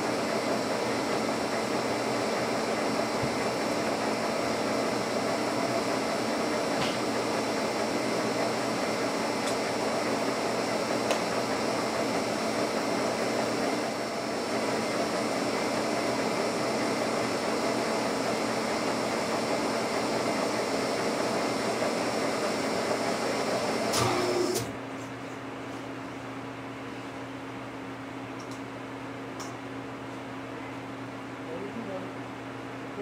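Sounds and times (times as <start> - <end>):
boring mill humming: 0.0 - 25.6.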